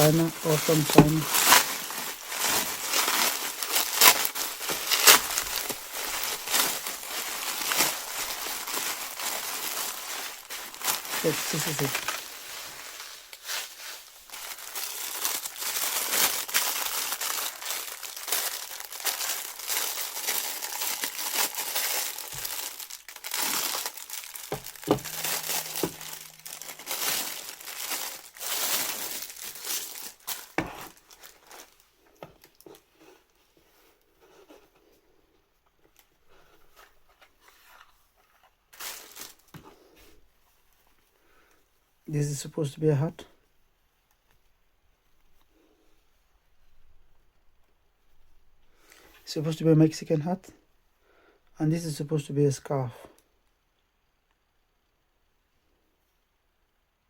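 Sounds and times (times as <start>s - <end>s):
plastic packaging crinkling and tearing: 0.0s - 32.9s, 36.8s - 39.6s.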